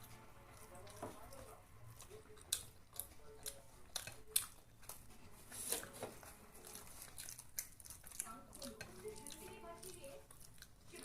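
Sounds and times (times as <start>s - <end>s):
person chewing food: 0.0s - 11.0s.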